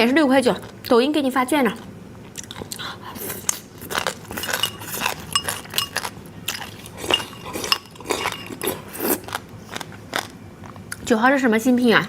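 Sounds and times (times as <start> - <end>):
eating crunchy snack: 2.3 - 10.9
utensil clinking on dish: 4.3 - 8.6.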